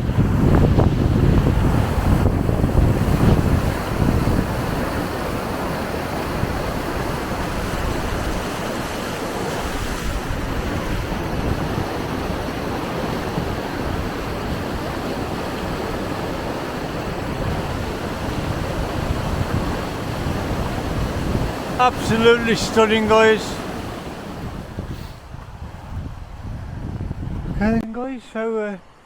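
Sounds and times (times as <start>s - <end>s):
wind buffeting microphone: 0.0s - 27.9s
waterfall rushing: 19.5s - 24.6s.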